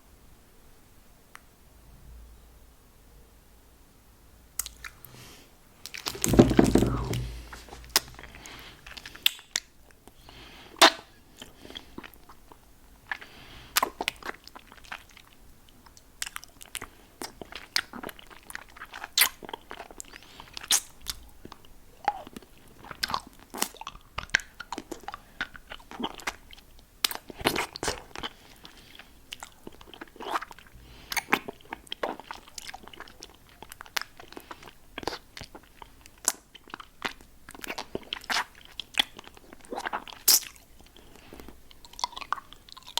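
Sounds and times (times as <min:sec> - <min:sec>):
wet mouth clicks and smacks: 0:04.6 - 0:05.1, 0:07.1 - 0:10.2, 0:29.4 - 0:42.9.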